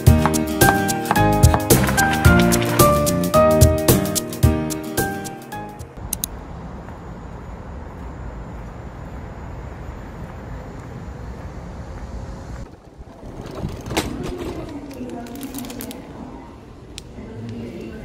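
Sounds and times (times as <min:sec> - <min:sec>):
traffic ambience rumbling hiss: 0:05.8 - 0:13.6.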